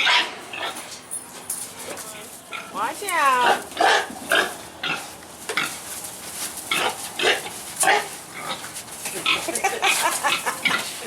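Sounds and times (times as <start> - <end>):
pigs grunting: 3.4 - 5.8, 6.7 - 11.0.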